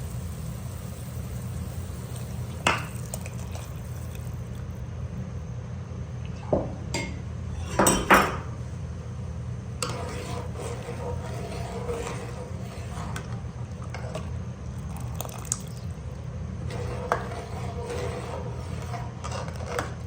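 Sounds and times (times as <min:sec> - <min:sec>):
steady low hum: 0:00.0 - 0:20.0
pots and utensils clinking: 0:06.6 - 0:08.5.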